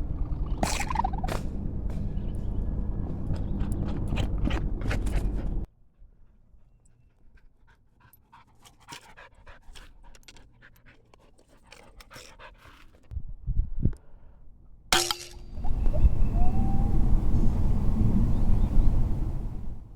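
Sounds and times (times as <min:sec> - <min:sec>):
loud rough rumbling: 0:00.0 - 0:05.7, 0:15.5 - 0:19.9
dog panting: 0:03.3 - 0:05.7, 0:07.0 - 0:13.1.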